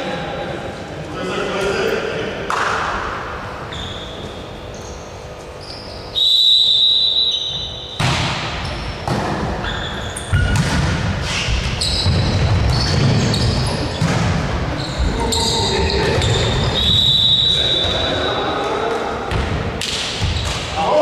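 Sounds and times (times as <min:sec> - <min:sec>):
shoe squeaks: 0:03.7 - 0:08.0, 0:08.6 - 0:09.0, 0:09.6 - 0:10.6, 0:11.2 - 0:14.1, 0:14.7 - 0:18.8
ball bouncing: 0:08.0 - 0:09.6, 0:10.2 - 0:16.6, 0:19.3 - 0:20.7.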